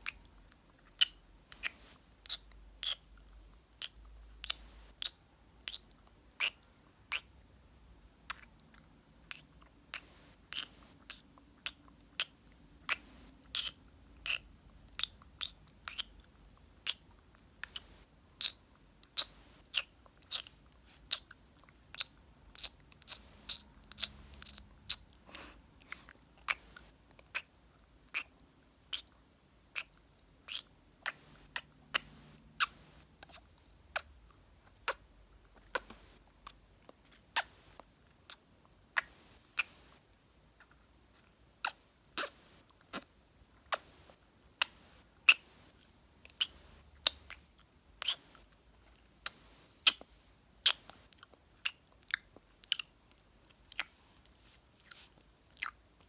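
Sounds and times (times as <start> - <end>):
kisses and lip smacks: 1.0 - 3.1, 28.9 - 29.1, 49.2 - 50.9.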